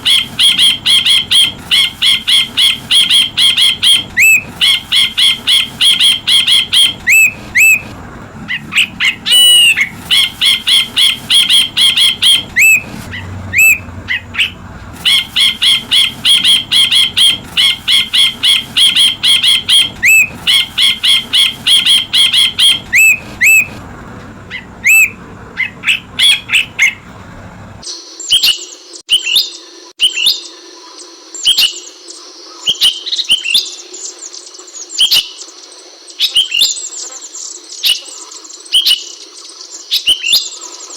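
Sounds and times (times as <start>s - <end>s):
background hum: 0.0s - 27.8s
bird chirping and whistling: 0.0s - 30.4s.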